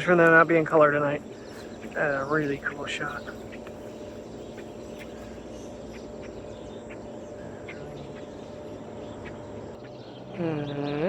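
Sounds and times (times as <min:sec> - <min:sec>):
bird chirps: 0:00.0 - 0:11.0
steady background hum: 0:00.0 - 0:11.0.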